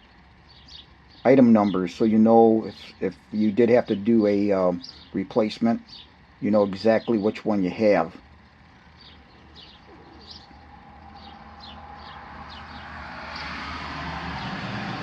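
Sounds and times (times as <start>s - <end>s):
bird chirping: 0.0s - 14.6s
steady low hum: 0.0s - 15.0s
broad rushing noise: 9.5s - 15.0s.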